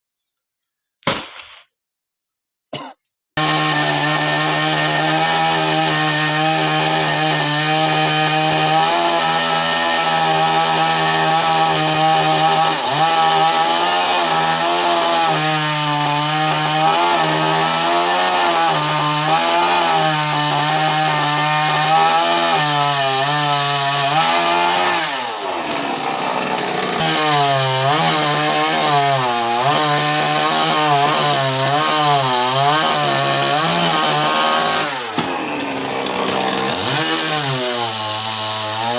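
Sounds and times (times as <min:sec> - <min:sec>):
chainsaw cutting wood: 0:01.0 - 0:01.7, 0:02.7 - 0:38.9.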